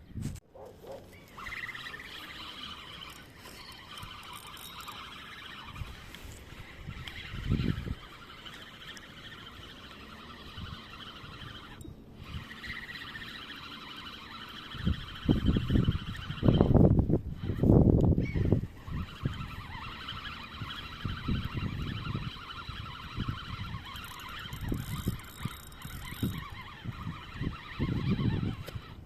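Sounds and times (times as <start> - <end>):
high chirping animal calls: 1.1 - 16.8.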